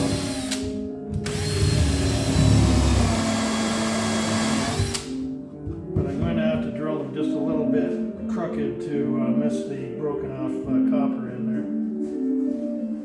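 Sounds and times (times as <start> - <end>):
electric drill whining: 0.0 - 5.2.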